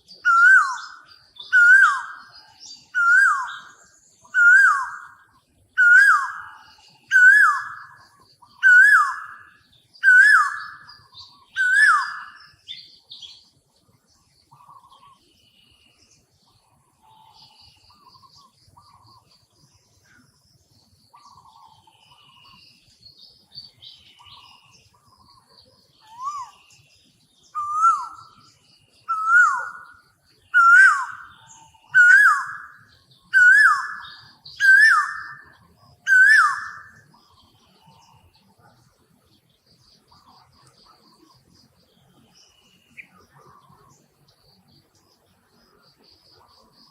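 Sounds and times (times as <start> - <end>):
soft bird chirps: 0.0 - 46.9
bird whistling swooping call: 11.6 - 12.4, 27.6 - 28.3, 29.1 - 29.9, 33.4 - 35.4, 36.1 - 37.0.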